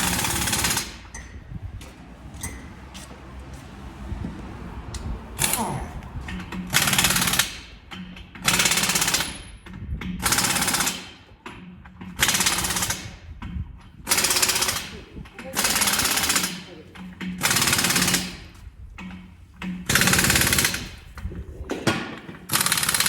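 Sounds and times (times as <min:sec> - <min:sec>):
impact wrench hammering: 0:15.4 - 0:21.0.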